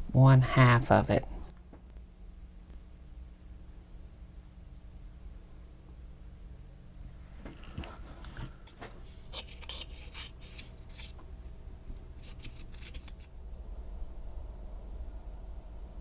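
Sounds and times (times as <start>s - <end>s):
scraping and rubbing with clicks: 7.4s - 13.3s.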